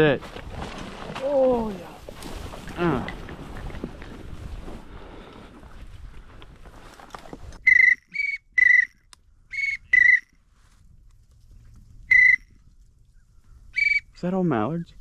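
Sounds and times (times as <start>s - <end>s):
duck whistle call toots: 7.6s - 10.3s, 12.1s - 12.6s, 13.7s - 14.2s.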